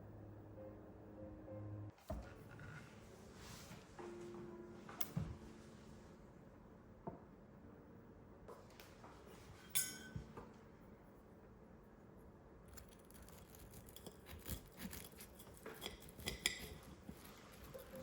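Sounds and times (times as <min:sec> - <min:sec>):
ringing clink: 0:09.7 - 0:10.2.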